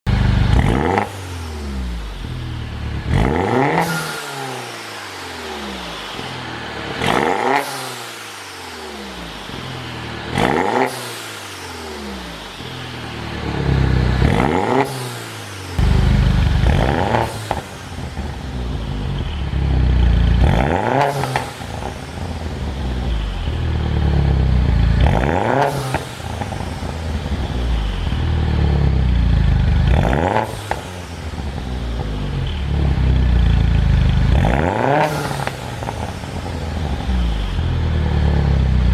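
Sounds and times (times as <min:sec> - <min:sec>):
car engine revving: 0:00.1 - 0:38.9
exhaust pops and crackles: 0:29.6 - 0:32.6.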